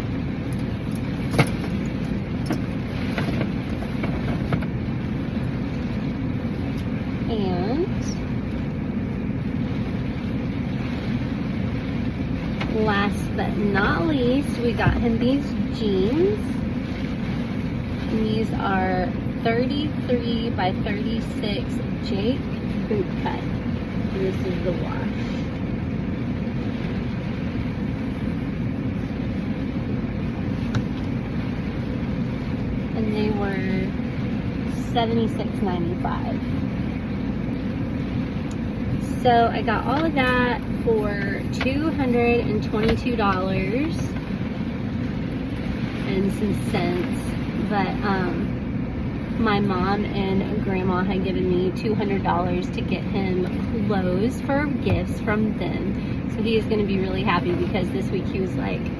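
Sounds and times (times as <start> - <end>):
car engine idling: 0.0 - 18.7
car interior drone: 0.0 - 58.9.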